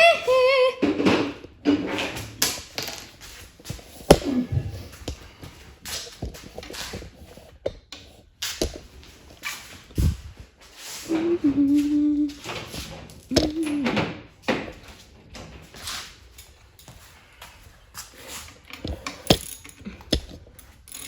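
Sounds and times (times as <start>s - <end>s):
person humming: 0.0s - 0.8s, 4.1s - 4.8s, 11.0s - 12.5s, 13.3s - 14.0s
bicycle parts clicking and rustling: 1.3s - 10.4s, 12.4s - 21.0s.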